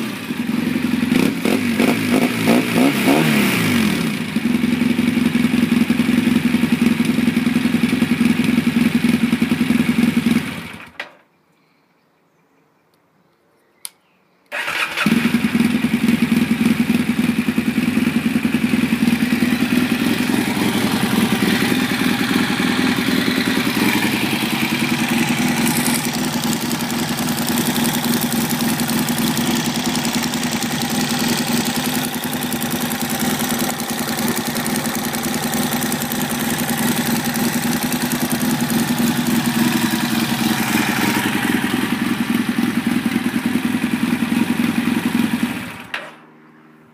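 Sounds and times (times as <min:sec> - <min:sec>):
motorcycle engine idling: 0:00.0 - 0:10.9, 0:14.6 - 0:46.9
single click: 0:12.9 - 0:14.6.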